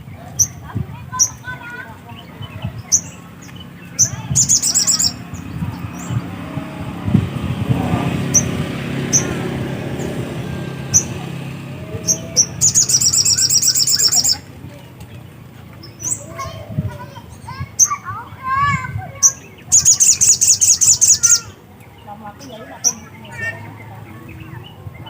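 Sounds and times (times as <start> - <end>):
songbird chirps and trill: 0.0 - 25.0
low steady rumble: 0.2 - 19.7.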